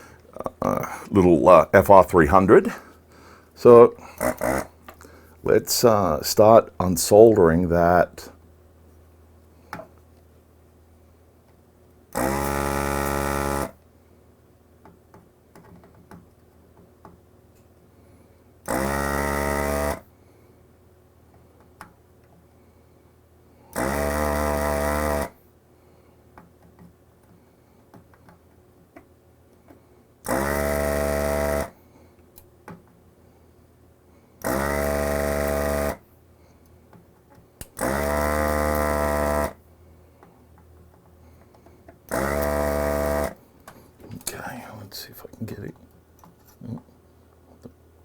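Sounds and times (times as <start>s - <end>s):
desoldering vacuum pump bursts: 0.0s - 8.2s, 12.1s - 13.8s, 18.6s - 20.0s, 23.7s - 25.4s, 30.2s - 31.7s, 34.4s - 36.0s, 37.6s - 39.6s, 42.1s - 43.4s.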